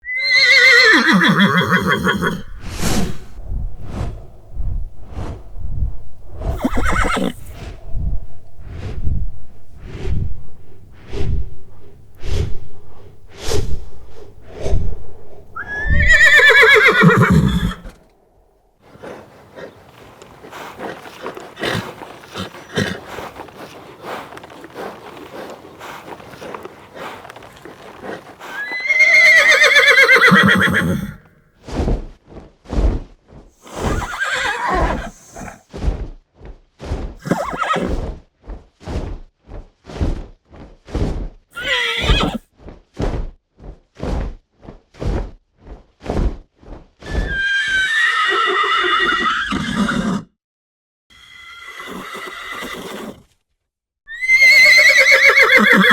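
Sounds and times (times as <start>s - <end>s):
horse whinny: 0.0s - 2.5s, 6.5s - 7.6s, 15.6s - 18.0s, 19.0s - 31.3s, 33.7s - 35.6s, 37.2s - 37.9s, 41.6s - 42.4s, 47.2s - 50.3s, 51.1s - 53.3s, 54.1s - 55.9s
hoofbeats clattering: 18.9s - 29.8s.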